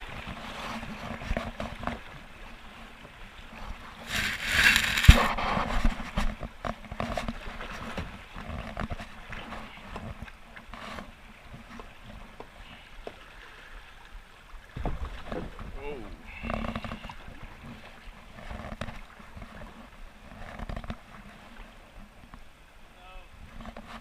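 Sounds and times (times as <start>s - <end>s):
water noise: 0.0s - 24.0s
small knocks and splashes: 3.0s - 22.4s
wind noise on microphone: 4.0s - 10.3s.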